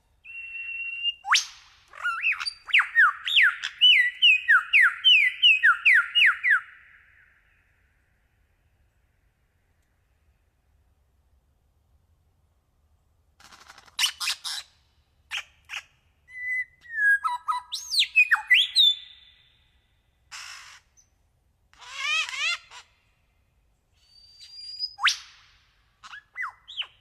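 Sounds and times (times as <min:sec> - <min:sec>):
bird calls: 0:00.3 - 0:07.9, 0:13.4 - 0:23.3, 0:23.9 - 0:27.0.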